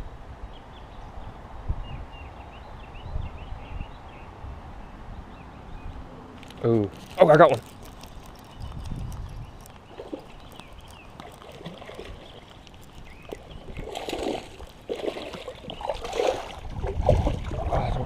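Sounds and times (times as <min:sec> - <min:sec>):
water splashing: 0:07.0 - 0:18.0.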